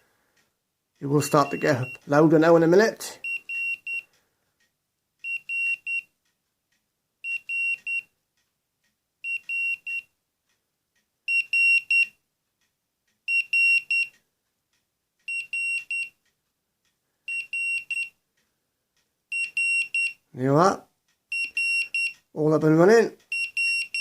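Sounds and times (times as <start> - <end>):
pager triple beep: 1.2 - 2.1, 21.3 - 22.2, 23.4 - 24.0.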